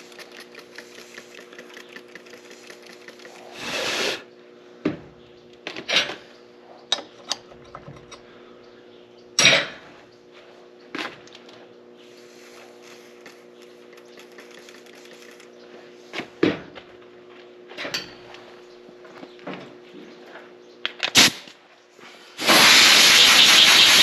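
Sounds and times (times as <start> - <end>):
steady hum with light ticking: 0.0 - 22.1
loud rasping burst: 22.4 - 24.0.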